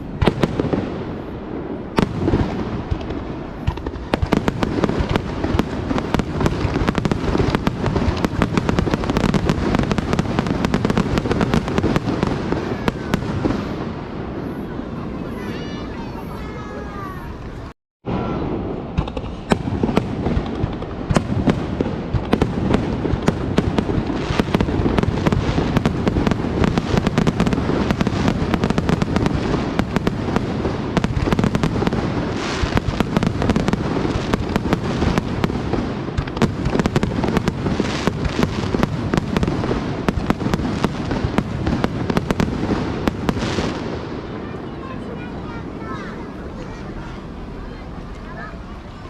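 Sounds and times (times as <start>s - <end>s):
fireworks booming and crackling: 0.0s - 49.0s
continuous rumble: 44.3s - 49.0s.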